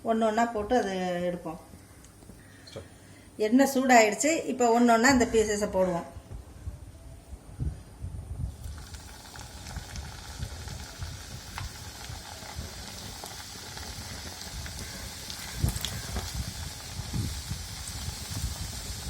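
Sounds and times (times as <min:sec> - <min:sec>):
dough deep-frying in hot oil: 0:08.4 - 0:19.0.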